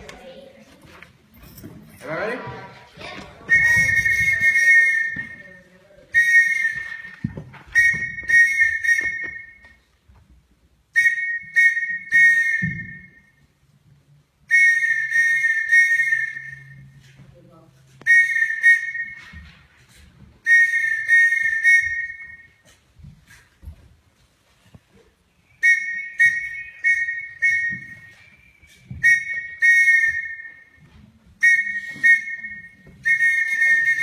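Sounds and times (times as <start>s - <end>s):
pea whistle blasts: 3.5s - 5.5s, 6.2s - 9.8s, 11.0s - 13.4s, 14.5s - 17.0s, 18.0s - 19.4s, 20.4s - 22.6s, 25.5s - 30.8s, 31.4s - 34.0s.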